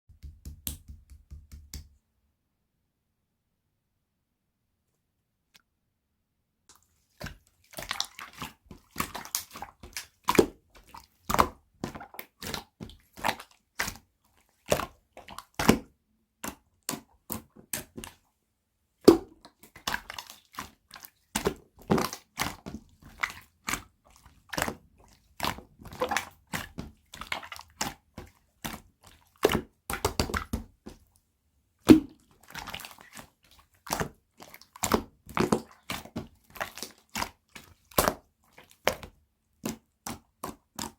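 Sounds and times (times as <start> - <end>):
slime squishing wet pops: 6.7 - 14.0, 14.7 - 18.2, 19.0 - 31.1, 31.8 - 40.9.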